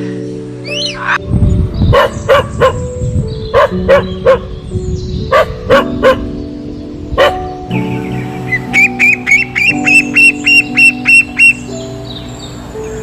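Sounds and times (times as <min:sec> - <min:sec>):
background music: 0:00.0 - 0:13.0
dog barking: 0:01.9 - 0:02.9, 0:03.5 - 0:04.5, 0:05.3 - 0:06.3, 0:07.2 - 0:07.4.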